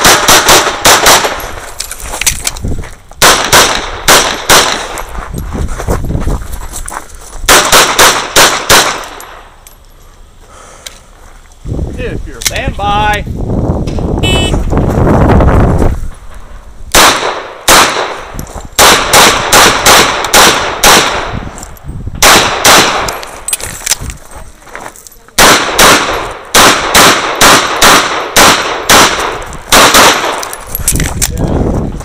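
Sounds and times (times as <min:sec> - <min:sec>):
rapid pistol fire: 0:00.0 - 0:01.4, 0:03.2 - 0:04.9, 0:07.5 - 0:09.1, 0:16.9 - 0:18.2, 0:18.8 - 0:21.4, 0:22.2 - 0:23.2, 0:25.4 - 0:30.5.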